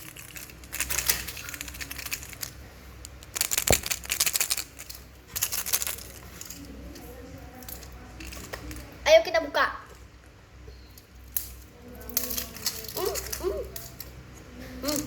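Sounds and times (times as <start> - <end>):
small hard pieces rattling: 0.0 - 6.7, 11.3 - 14.1.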